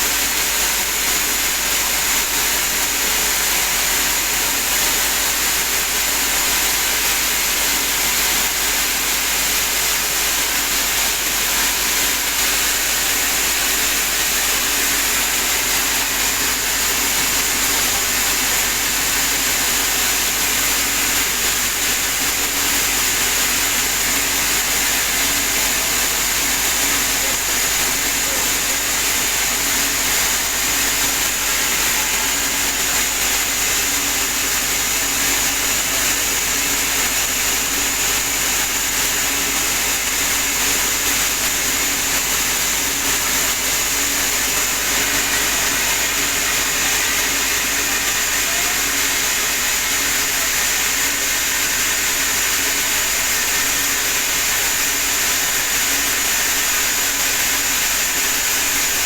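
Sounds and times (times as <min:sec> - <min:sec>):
sawmill saw whining: 0:00.0 - 0:59.0.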